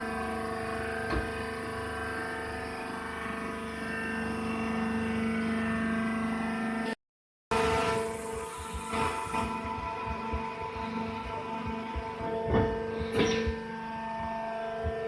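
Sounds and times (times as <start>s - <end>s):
baling press machine hum: 0.0s - 6.9s, 7.5s - 15.0s.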